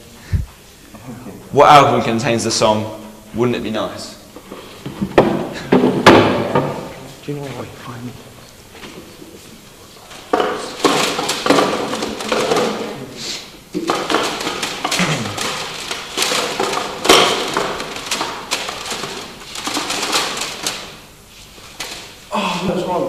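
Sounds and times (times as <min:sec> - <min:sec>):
album cases clattering: 0:10.2 - 0:22.2.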